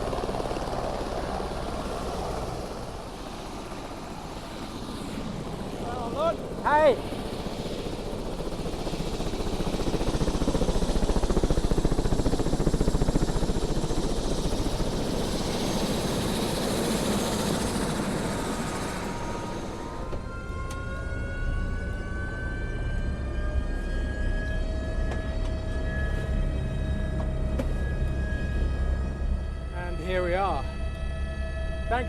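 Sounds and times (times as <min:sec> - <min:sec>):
helicopter rotors and engine: 0:00.0 - 0:32.0
low drone with rising whine: 0:13.5 - 0:32.0.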